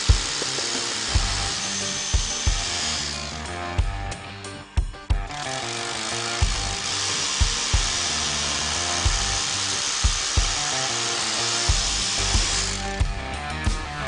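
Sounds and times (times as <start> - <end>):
rotary hammer running: 0.0 - 3.4, 5.3 - 13.0
music with steady beat: 0.0 - 14.0.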